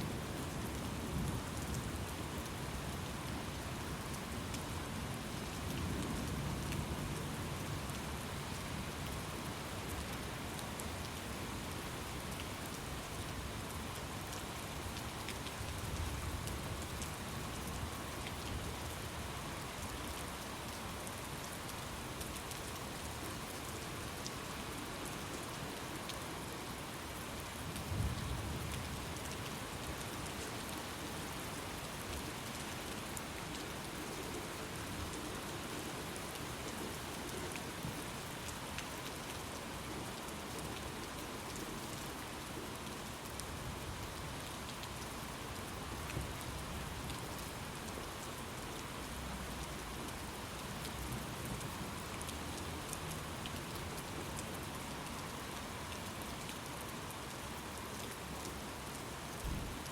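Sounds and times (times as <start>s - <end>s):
rain falling: 0.0s - 59.9s.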